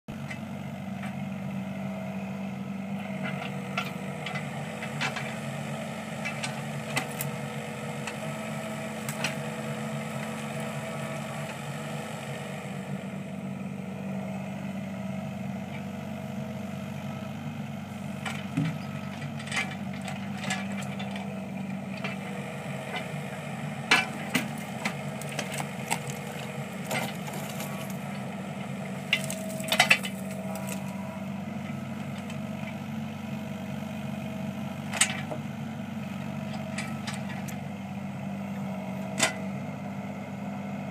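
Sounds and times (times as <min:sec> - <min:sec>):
excavator diesel engine running: 0:00.1 - 0:40.9
sharp clanks and knocks: 0:18.2 - 0:21.3, 0:23.9 - 0:28.0, 0:29.1 - 0:30.8.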